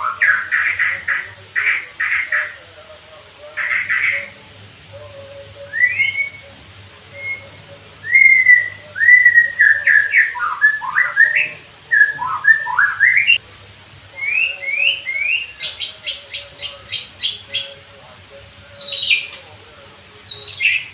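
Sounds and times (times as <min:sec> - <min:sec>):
bird singing whistled notes: 0:00.0 - 0:02.6, 0:03.6 - 0:04.4, 0:05.4 - 0:13.4, 0:14.2 - 0:17.8, 0:18.7 - 0:19.4, 0:20.3 - 0:20.9.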